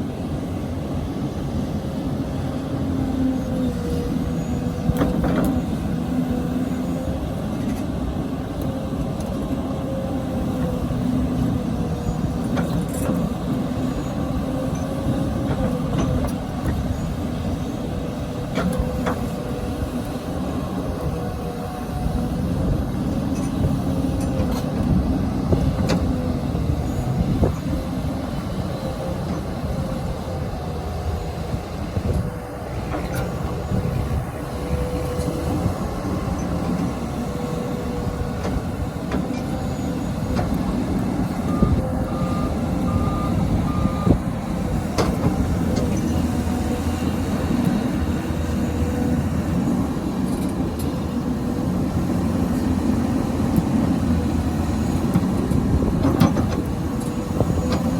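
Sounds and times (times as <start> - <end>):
excavator diesel engine running: 0.0 - 57.9
reversing alarm beeps: 41.2 - 44.4.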